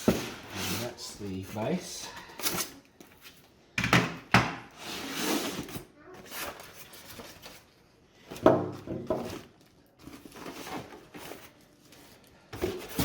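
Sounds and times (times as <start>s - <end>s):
packaging rustling: 9.0s - 13.0s.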